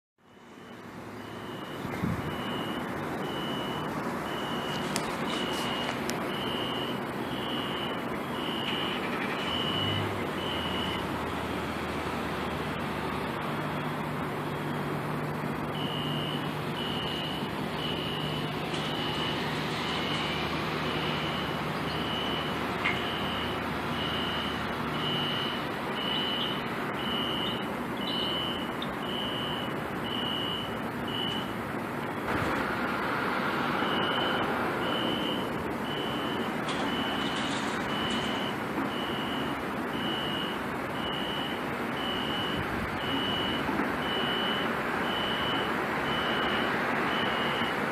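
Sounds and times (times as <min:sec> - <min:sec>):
fire alarm horn beeping: 0:00.3 - 0:11.1, 0:15.7 - 0:31.5, 0:33.8 - 0:47.8.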